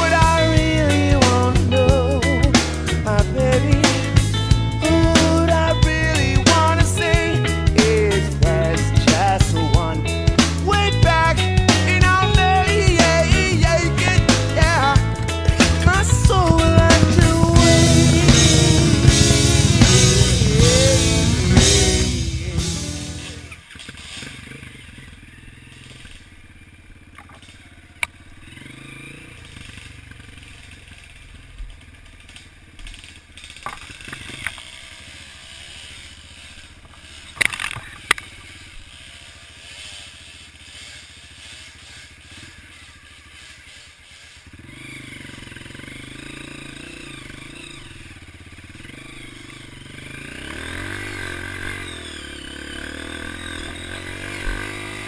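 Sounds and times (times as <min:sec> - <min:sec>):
motorcycle engine revving: 0:00.0 - 0:55.0
sharp knocks and clatter: 0:14.3 - 0:20.9, 0:31.8 - 0:35.0.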